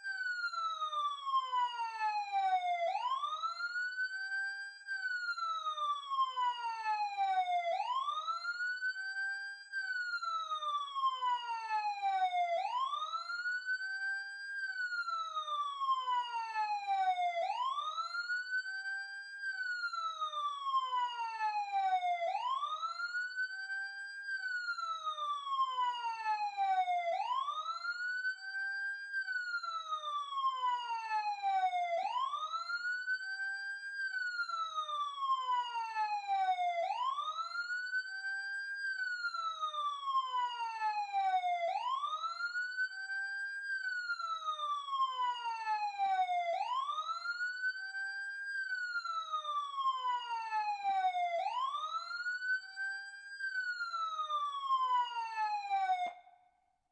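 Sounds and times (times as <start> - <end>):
electronic siren wailing: 43.8 - 52.9, 53.5 - 56.2.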